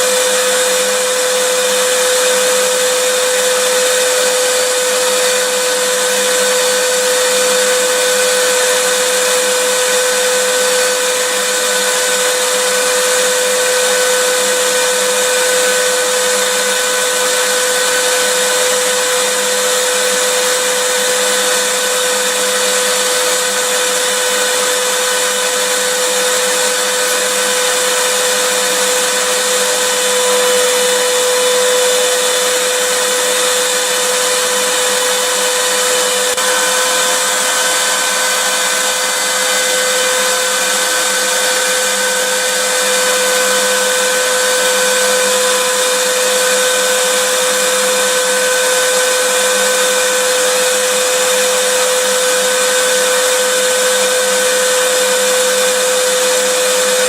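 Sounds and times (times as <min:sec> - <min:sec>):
vacuum cleaner running: 0:00.0 - 0:57.0.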